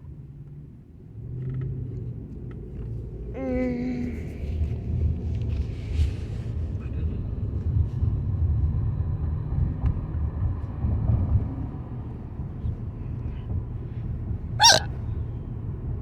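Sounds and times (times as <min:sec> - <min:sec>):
road and engine rumble in car: 0:00.0 - 0:16.0
person hiccuping: 0:14.6 - 0:14.9.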